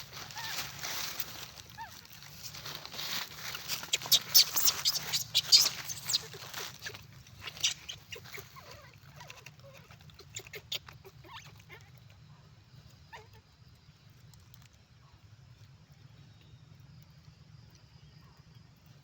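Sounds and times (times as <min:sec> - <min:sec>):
monkeys squeaking and clicking: 0:00.0 - 0:12.2.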